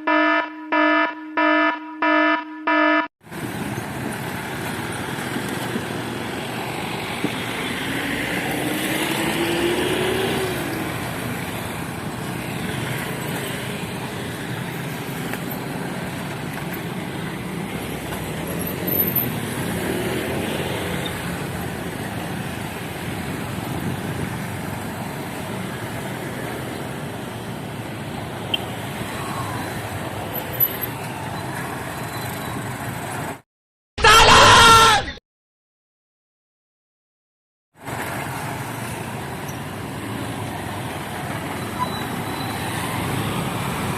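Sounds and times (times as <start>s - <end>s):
traffic passing: 3.2s - 33.4s, 37.8s - 43.9s
engine speeding up: 4.2s - 13.6s.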